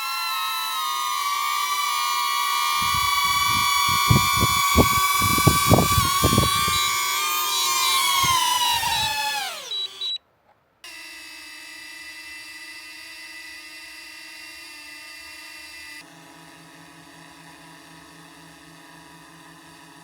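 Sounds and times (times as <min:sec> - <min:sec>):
drone propellers whining: 0:00.0 - 0:10.2
second drone whining: 0:00.0 - 0:10.2
prop wash thumping microphone: 0:02.8 - 0:07.0.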